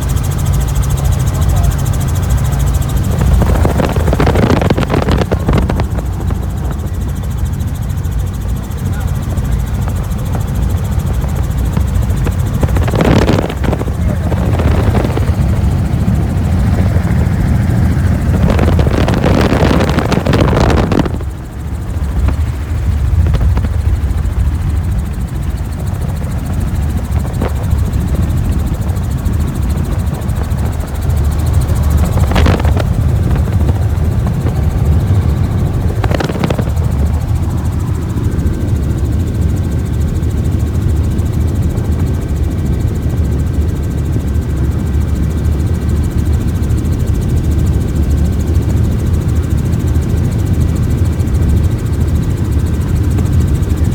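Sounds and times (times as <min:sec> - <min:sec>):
helicopter rotor throb: 0:00.0 - 0:53.9
rushes of noise: 0:11.8 - 0:24.6.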